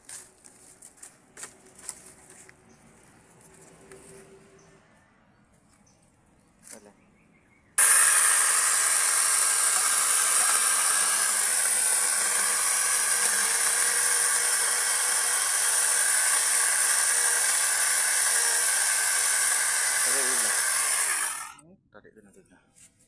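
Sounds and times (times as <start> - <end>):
electric chainsaw whirring: 7.8 - 21.6.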